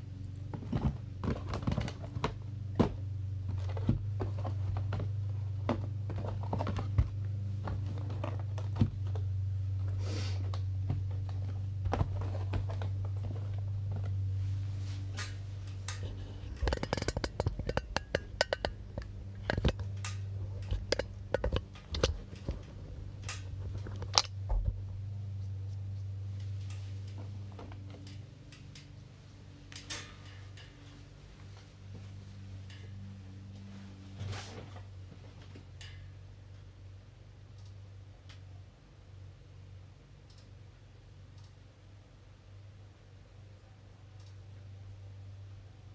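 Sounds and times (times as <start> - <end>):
steady low hum: 0.0 - 45.9
taps clicks and knocks: 15.9 - 24.8.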